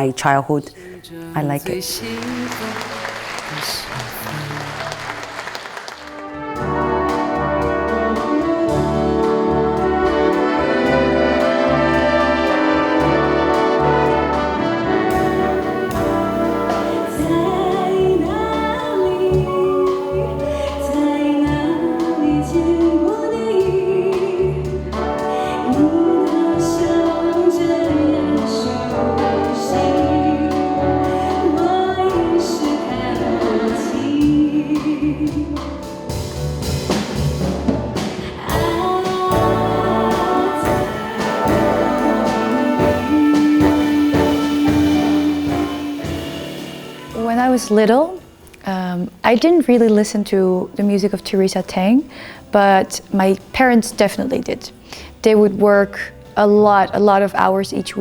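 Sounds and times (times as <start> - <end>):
bass: 0.0 - 58.0
person singing: 0.8 - 5.0, 38.2 - 48.2
steady drum beat: 1.1 - 50.0
brass: 1.6 - 48.5.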